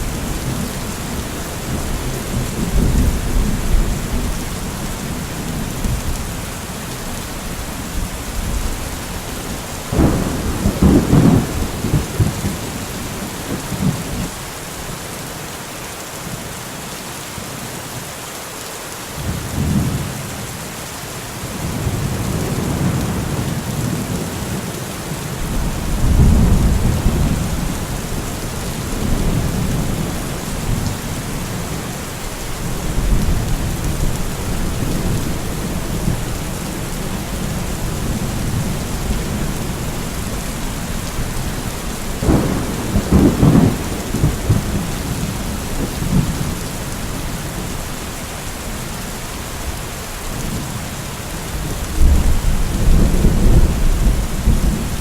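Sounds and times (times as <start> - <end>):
thunder rumbling: 0.0 - 14.3, 25.4 - 47.8, 51.9 - 55.0
steady rain falling: 0.0 - 55.0
sharp thunderclap: 9.9 - 12.7, 42.2 - 46.5.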